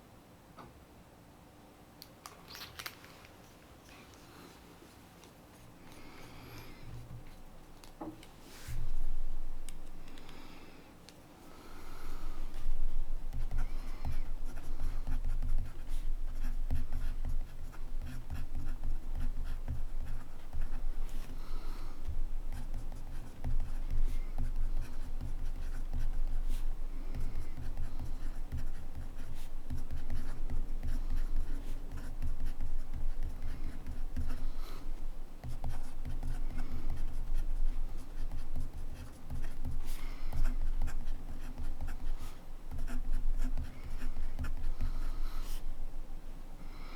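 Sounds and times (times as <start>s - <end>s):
fountain pen writing on paper: 13.3s - 21.2s, 22.0s - 34.7s.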